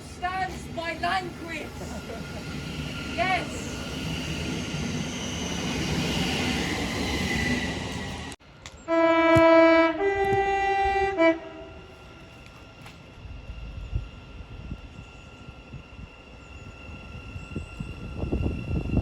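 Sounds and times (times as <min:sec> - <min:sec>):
train rumbling past: 0:00.0 - 0:19.0
two-tone train horn: 0:08.9 - 0:12.4.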